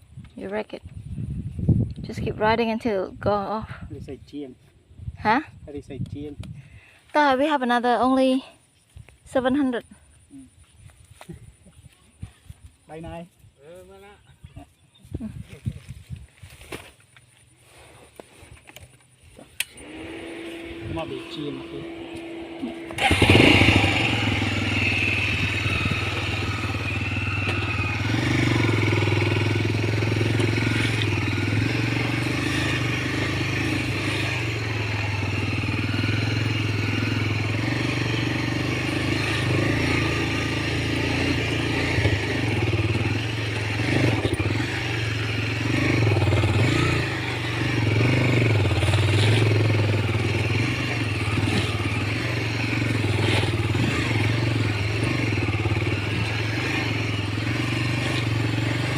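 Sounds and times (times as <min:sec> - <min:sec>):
motorcycle engine running: 0:17.4 - 0:58.9
motorcycle rattling: 0:18.3 - 0:58.9.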